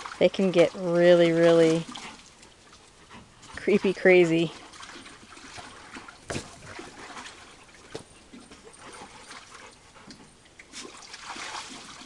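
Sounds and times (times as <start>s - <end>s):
water splashing and trickling: 0.0s - 12.0s.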